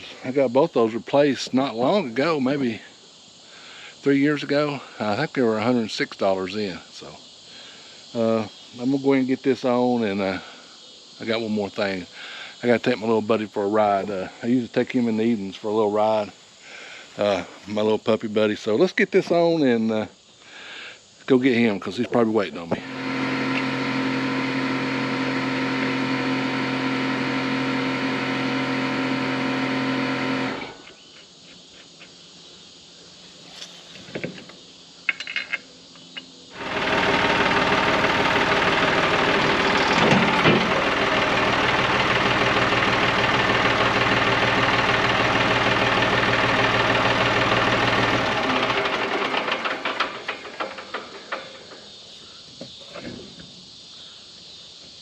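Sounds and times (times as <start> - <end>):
motor-driven machine running: 22.6 - 31.0, 36.5 - 51.2.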